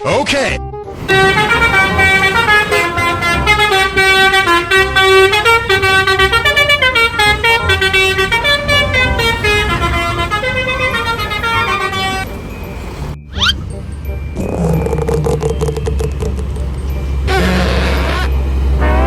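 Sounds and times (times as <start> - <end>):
musical bus horn tune: 0.7 - 19.0
vehicle rumble: 0.7 - 19.0.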